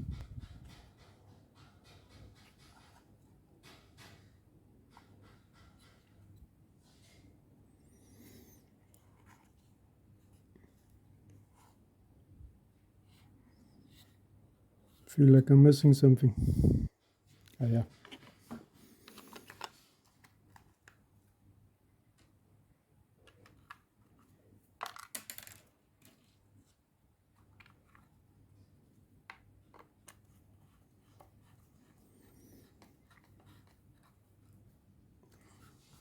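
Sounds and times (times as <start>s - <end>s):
clicks of small parts handled: 24.8s - 26.2s.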